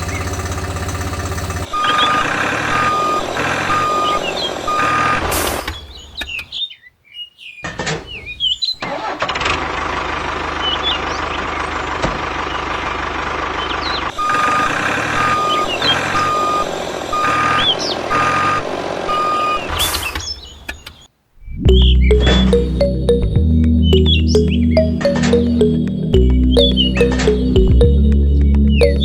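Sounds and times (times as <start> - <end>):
small tractor motor running: 0.0 - 3.2.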